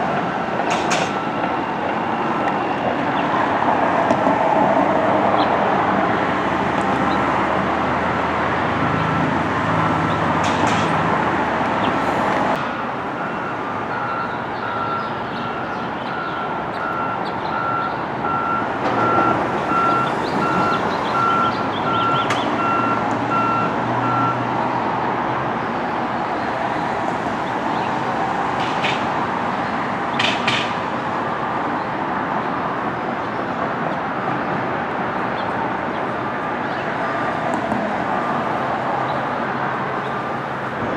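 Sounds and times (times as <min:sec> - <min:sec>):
rumble of engines: 0:00.0 - 0:40.9
reversing alarm beeping: 0:00.2 - 0:03.2, 0:12.7 - 0:24.4.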